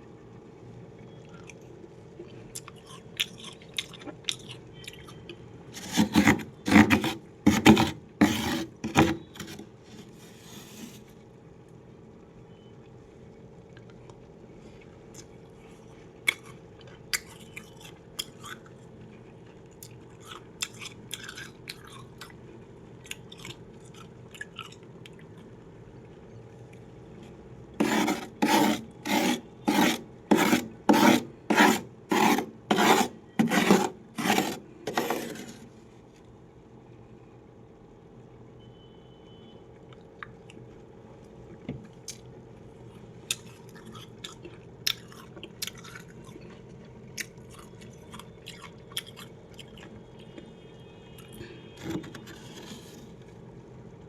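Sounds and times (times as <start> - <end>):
freezer frost scraping: 5.7 - 11.2, 27.8 - 35.8, 52.0 - 53.3.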